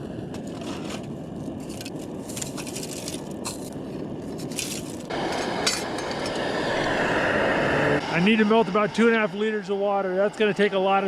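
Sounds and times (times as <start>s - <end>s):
camp stove roaring: 0.0s - 11.0s
snow scraped and scooped: 0.4s - 6.9s
loud rushing noise: 5.1s - 11.0s.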